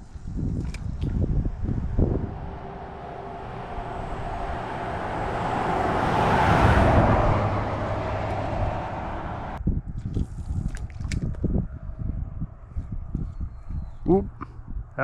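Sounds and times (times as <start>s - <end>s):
vehicle driving past: 1.6s - 9.6s.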